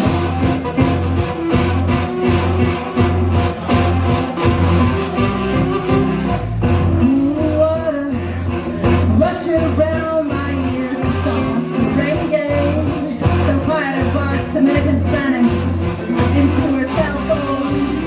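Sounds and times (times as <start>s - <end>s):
live rock band: 0.0s - 18.0s
person singing: 0.0s - 18.0s.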